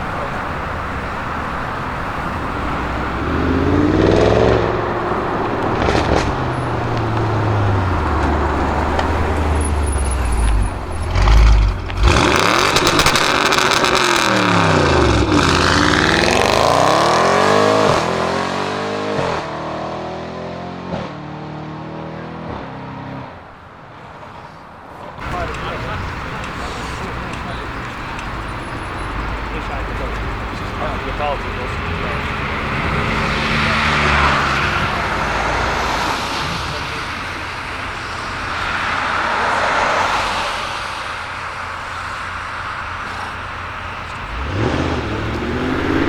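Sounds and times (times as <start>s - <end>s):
car engine revving and accelerating: 0.0s - 23.3s, 25.2s - 46.0s.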